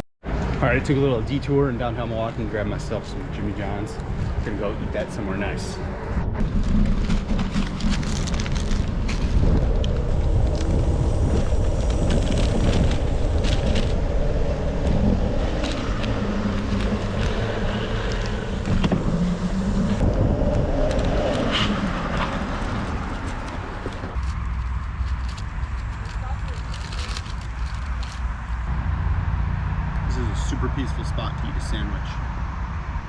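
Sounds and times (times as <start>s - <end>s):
road and wind noise: 0.2s - 33.0s
bicycle clicks and rattles: 6.4s - 19.0s, 20.8s - 28.7s.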